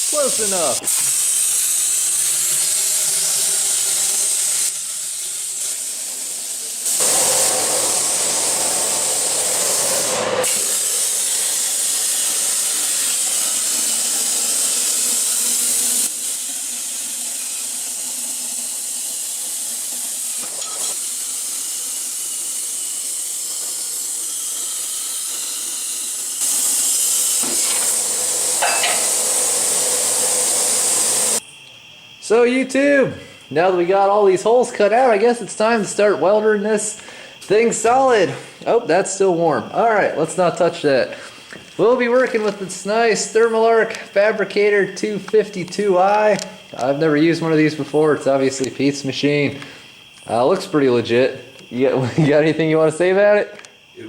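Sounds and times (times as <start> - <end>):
plasma cutter hissing: 0.0 - 54.0.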